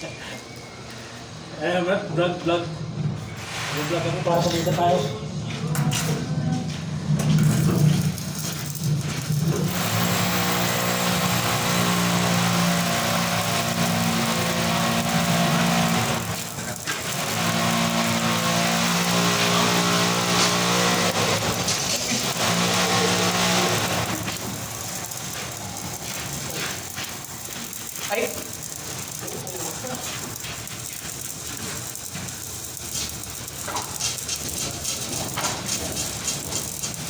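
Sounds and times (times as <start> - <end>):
welding arc crackling and hissing: 7.2 - 37.0.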